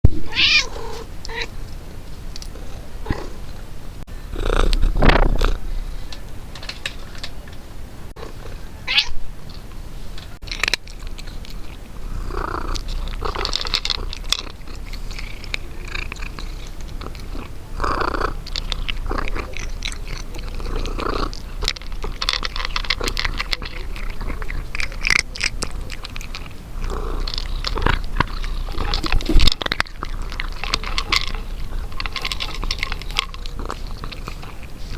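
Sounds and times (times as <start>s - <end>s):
cat chewing food: 10.3s - 34.9s.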